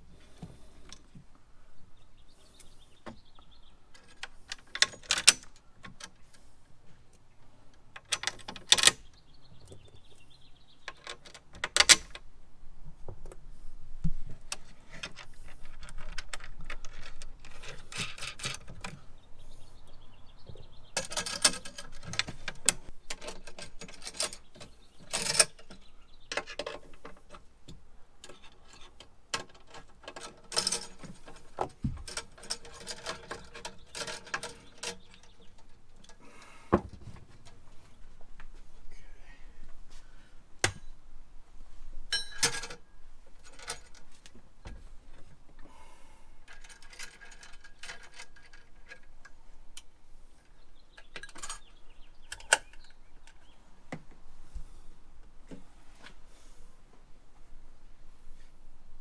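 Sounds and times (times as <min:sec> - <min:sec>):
metallic tool clinks and rattles: 0:21.0 - 0:25.7, 0:29.5 - 0:35.4, 0:42.1 - 0:42.8, 0:43.4 - 0:44.1.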